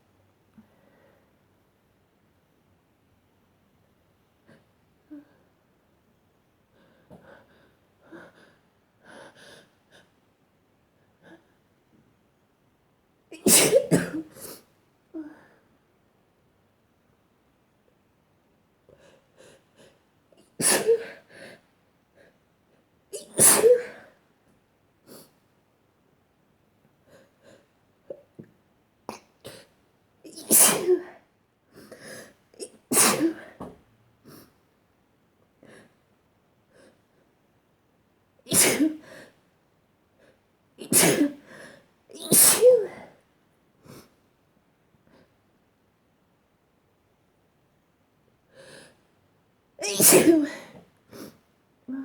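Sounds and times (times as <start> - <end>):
person sneezing: 13.4 - 14.6, 23.2 - 24.0, 30.3 - 31.1, 32.6 - 33.6, 38.5 - 39.1, 40.8 - 41.5, 42.2 - 43.1, 49.8 - 50.8.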